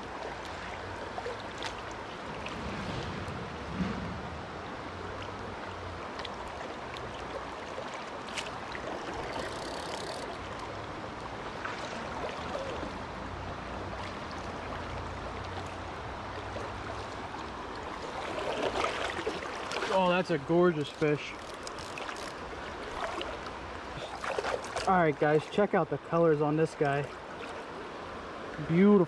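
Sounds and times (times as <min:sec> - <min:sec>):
river rushing: 0:00.0 - 0:29.0
faint clicks and splashes: 0:00.2 - 0:04.0, 0:06.1 - 0:13.0, 0:13.9 - 0:25.6.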